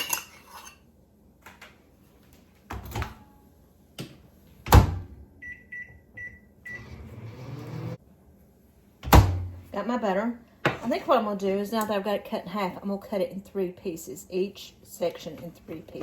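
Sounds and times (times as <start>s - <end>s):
microwave oven humming: 4.6s - 8.1s.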